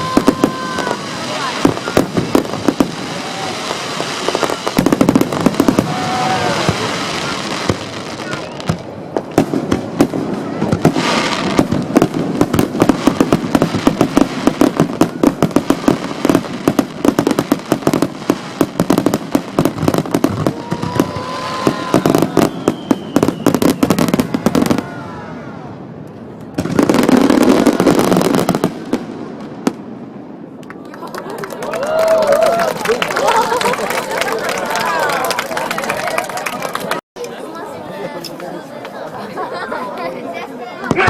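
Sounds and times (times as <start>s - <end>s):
fireworks bangs and crackling: 0.0s - 30.6s, 40.8s - 41.0s.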